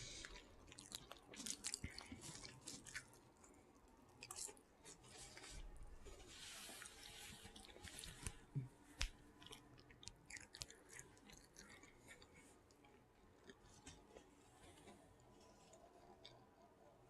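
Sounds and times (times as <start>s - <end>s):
pet crunching hard food: 0.0s - 3.6s, 9.4s - 13.6s.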